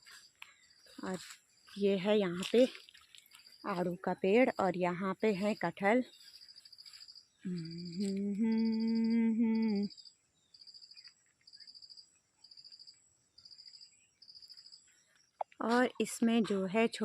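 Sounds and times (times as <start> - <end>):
crickets chirping: 0.0 - 15.5
person humming: 7.5 - 9.9.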